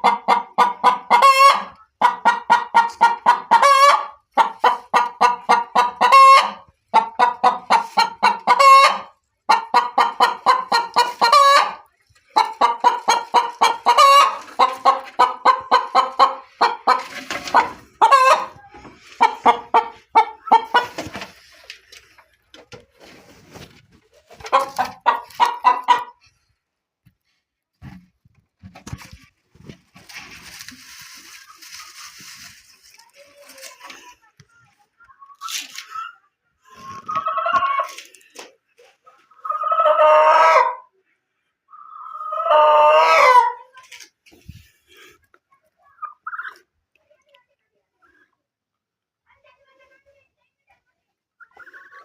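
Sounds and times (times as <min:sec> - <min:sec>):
pet bird clucking and squawking: 0:00.0 - 0:21.8, 0:23.5 - 0:26.2, 0:36.8 - 0:38.2, 0:41.7 - 0:43.8, 0:45.9 - 0:46.7.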